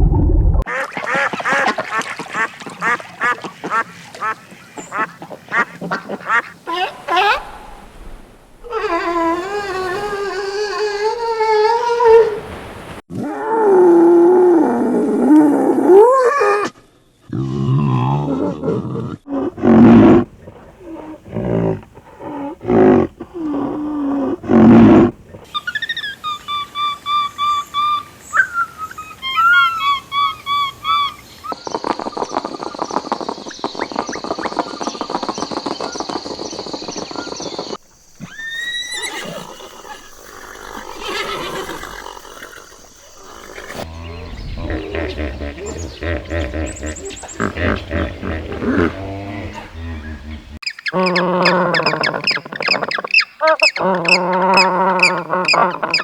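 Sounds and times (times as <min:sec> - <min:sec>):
chirping calls: 0:25.5 - 0:56.0
animal call with wavering pitch: 0:43.2 - 0:56.0.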